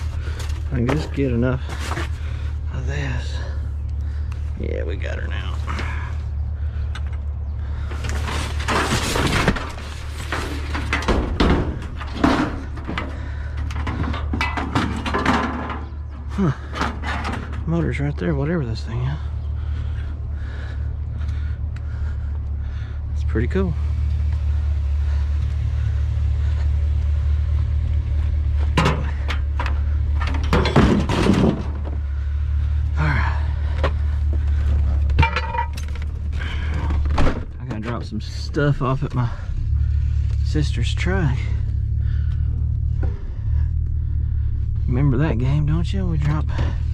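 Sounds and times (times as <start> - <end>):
junk scraping and rattling: 0.0 - 46.9
steady low hum: 0.0 - 46.9
vehicle engine droning: 0.0 - 46.9
clattering: 7.8 - 17.7, 28.6 - 32.3, 33.5 - 37.6.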